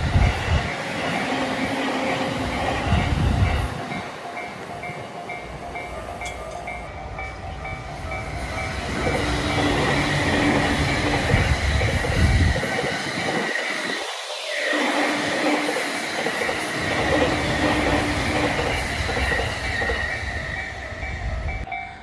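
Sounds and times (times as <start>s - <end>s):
train rumble and wheel clatter: 0.0s - 22.0s
level-crossing bell dinging: 2.9s - 11.4s, 17.7s - 22.0s.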